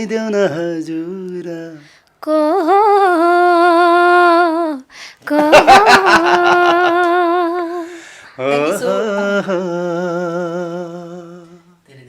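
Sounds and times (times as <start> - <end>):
man humming: 8.4 - 11.7.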